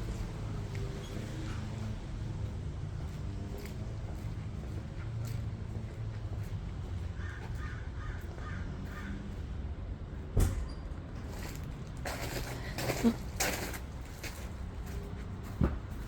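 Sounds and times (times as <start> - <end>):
crow cawing: 7.2 - 9.4.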